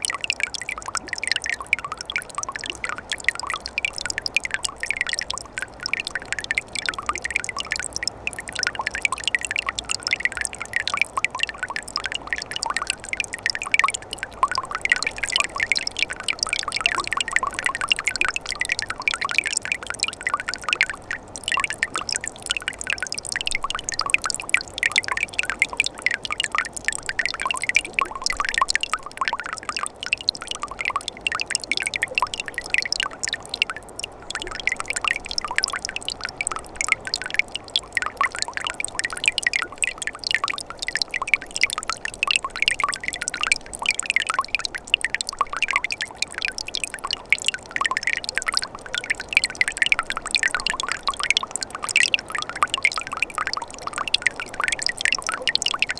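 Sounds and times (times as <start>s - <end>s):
stream trickling and splashing: 0.0s - 55.9s.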